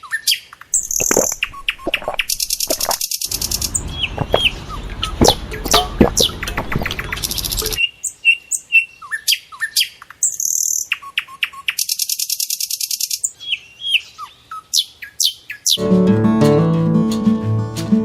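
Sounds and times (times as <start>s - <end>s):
birds chirping and whistling: 0.8s - 7.9s.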